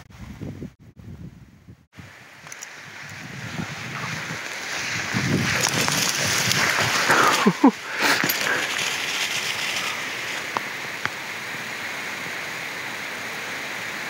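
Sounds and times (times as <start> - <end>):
wind buffeting microphone: 0.0 - 10.6.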